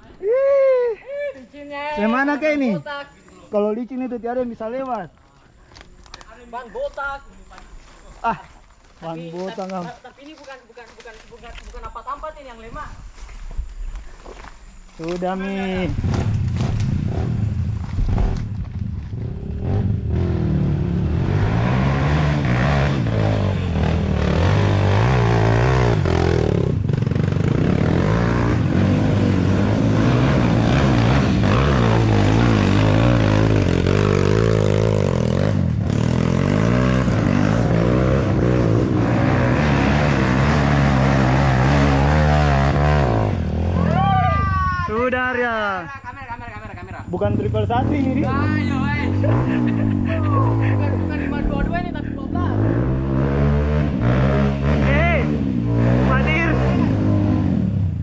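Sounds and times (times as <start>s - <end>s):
motorcycle engine revving: 14.4s - 44.3s, 46.6s - 58.0s.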